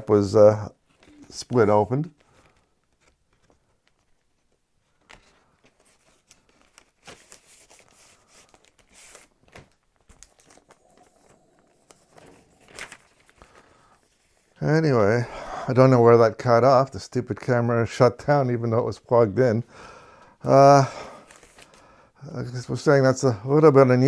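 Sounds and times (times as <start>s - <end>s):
plastic wrap crinkling: 0.8s - 14.6s.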